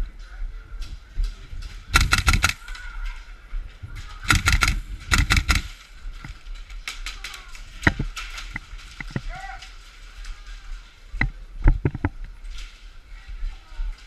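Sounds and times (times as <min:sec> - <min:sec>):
airsoft guns firing bursts: 0:01.9 - 0:02.7, 0:04.3 - 0:05.8.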